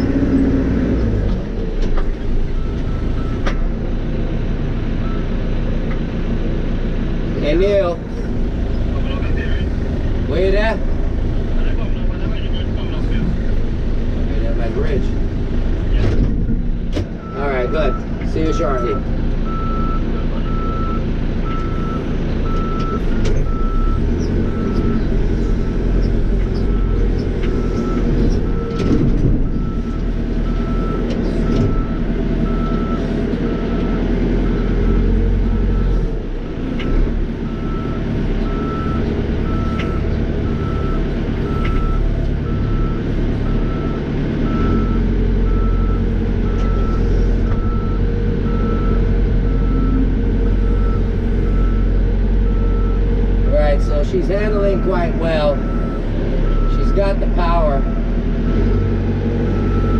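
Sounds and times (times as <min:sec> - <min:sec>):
diesel engine under load: 0:00.0 - 0:59.9
reversing alarm beeping: 0:37.5 - 0:58.9, 0:59.5 - 0:59.9.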